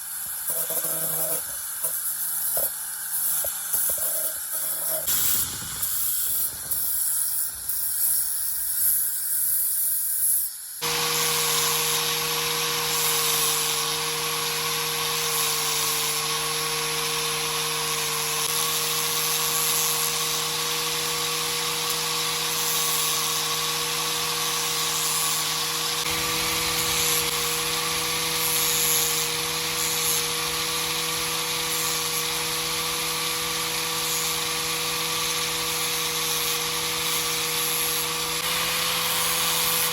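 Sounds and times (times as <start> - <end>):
high uneven hissing: 0.0 - 10.8
rotary tool grinding metal: 0.0 - 39.9.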